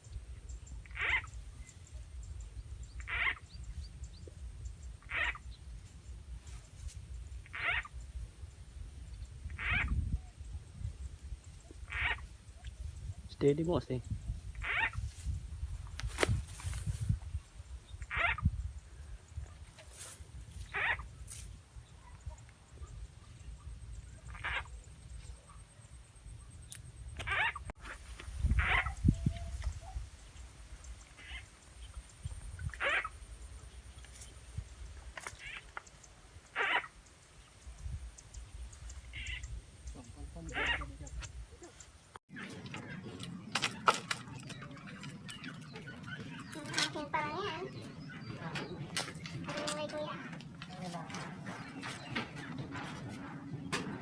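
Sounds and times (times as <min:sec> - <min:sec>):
frog calling: 0:00.8 - 0:01.4, 0:03.0 - 0:03.5, 0:05.0 - 0:05.6, 0:07.4 - 0:08.0, 0:09.4 - 0:10.2, 0:11.7 - 0:12.7, 0:14.5 - 0:15.1, 0:18.0 - 0:18.7, 0:20.6 - 0:21.1, 0:24.1 - 0:25.6, 0:26.7 - 0:34.0, 0:35.2 - 0:41.8.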